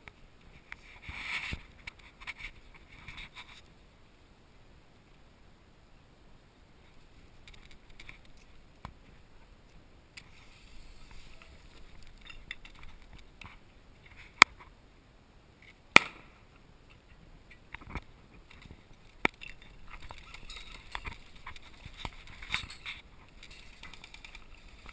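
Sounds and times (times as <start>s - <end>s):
rustling through brush: 6.8s - 14.7s, 16.2s - 24.9s.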